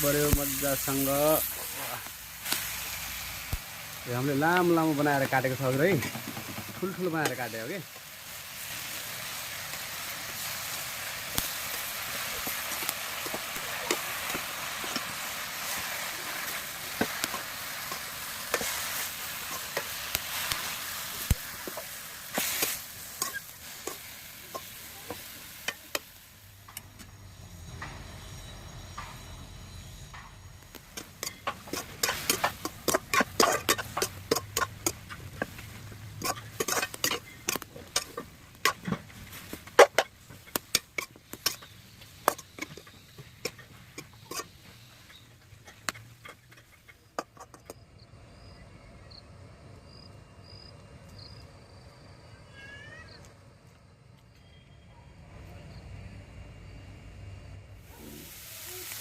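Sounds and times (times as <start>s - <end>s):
metal spoon scraping a pan: 15.7s - 25.3s, 30.8s - 47.7s.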